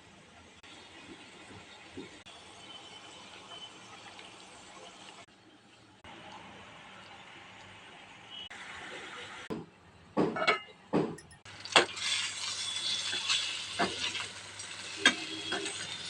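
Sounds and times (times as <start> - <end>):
food sizzling in hot oil: 11.5 - 16.0.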